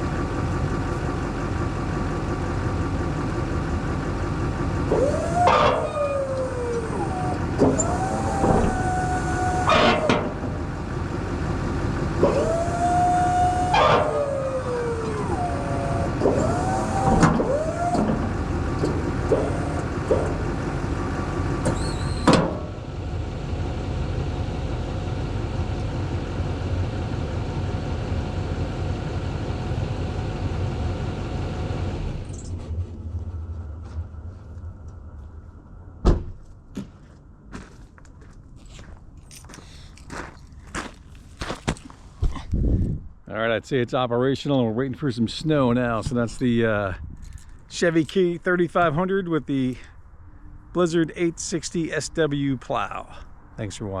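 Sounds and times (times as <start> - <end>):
hydraulic pump whining: 0.0 - 35.0
diesel pickup idling: 0.0 - 54.0.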